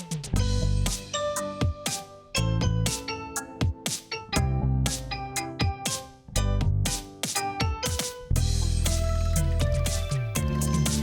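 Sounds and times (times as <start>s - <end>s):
electronic background music: 0.0s - 11.0s
heavy sustained bass: 8.4s - 11.0s.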